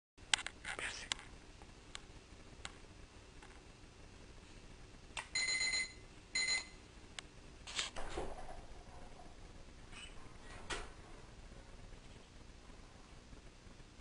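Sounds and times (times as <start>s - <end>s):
electronic doorbell buzzing: 5.3s - 6.8s.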